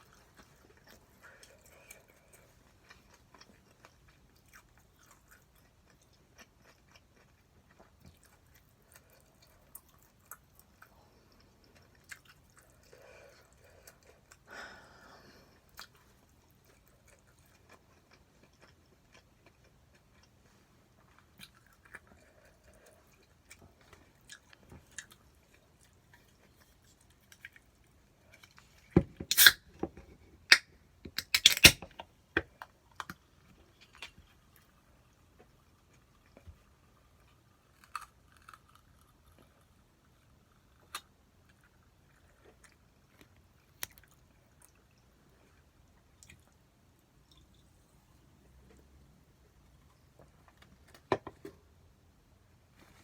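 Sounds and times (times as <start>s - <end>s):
faint chewing: 0.0s - 14.5s, 15.3s - 29.5s, 32.5s - 51.1s.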